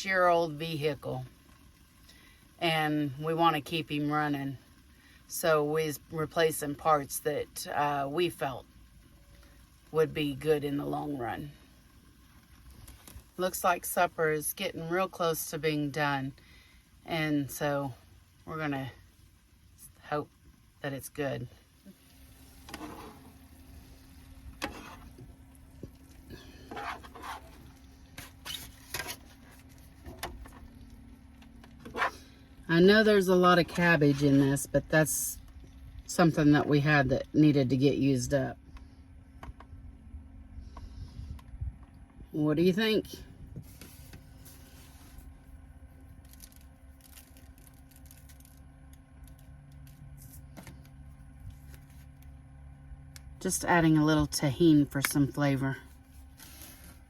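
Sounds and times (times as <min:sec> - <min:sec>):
steady low hum: 0:00.0 - 0:57.0
utensil scraping in a pan: 0:21.9 - 0:30.2, 0:31.8 - 0:32.3.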